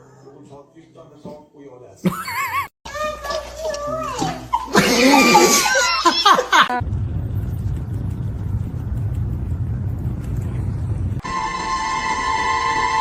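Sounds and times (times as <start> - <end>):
low steady rumble: 6.7 - 11.2.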